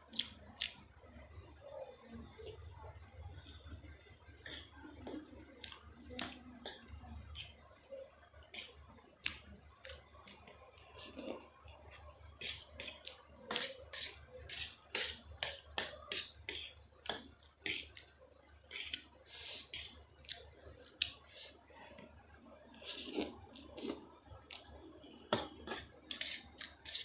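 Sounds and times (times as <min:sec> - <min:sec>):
person eating noodles: 0:04.4 - 0:07.6, 0:08.5 - 0:21.6, 0:22.7 - 0:27.0
slurps and smacks: 0:19.6 - 0:21.3, 0:22.7 - 0:27.0.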